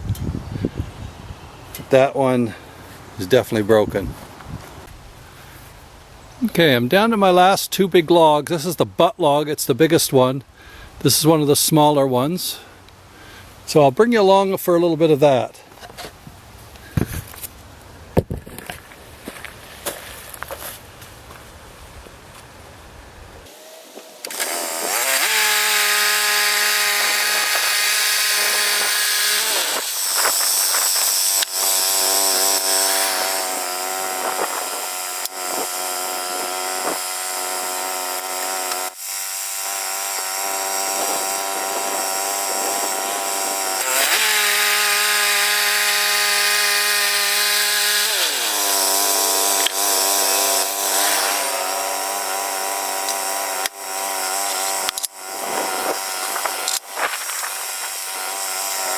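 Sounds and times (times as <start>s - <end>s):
bandsaw mill engine running: 23.5s - 58.9s
saw blade cutting through log: 23.5s - 58.9s.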